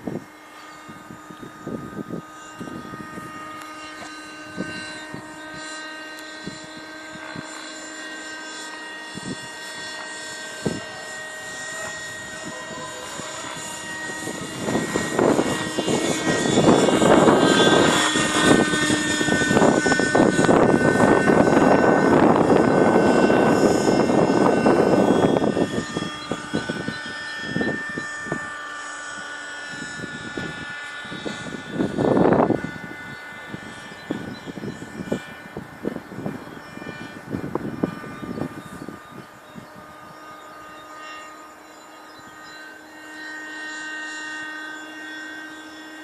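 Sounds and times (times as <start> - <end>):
model helicopter engine whine: 0.0 - 46.0
heavy rushing gusty noise: 11.4 - 26.9.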